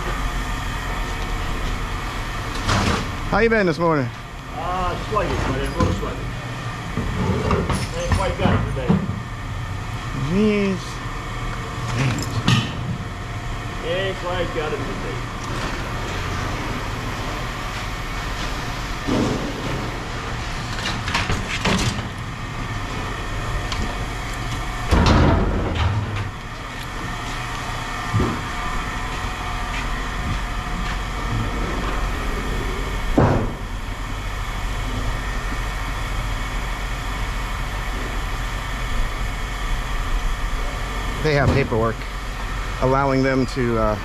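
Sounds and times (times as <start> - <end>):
vehicle engine idling: 0.0 - 25.0, 26.2 - 44.0
knocks and clanks: 5.1 - 6.3, 24.9 - 26.3, 33.0 - 33.7.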